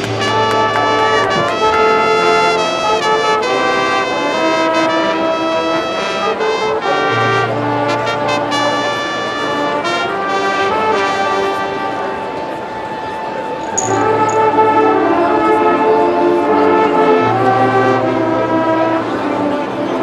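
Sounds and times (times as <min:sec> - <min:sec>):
low bass note: 0:00.0 - 0:02.9
brass section playing chords: 0:00.0 - 0:20.0.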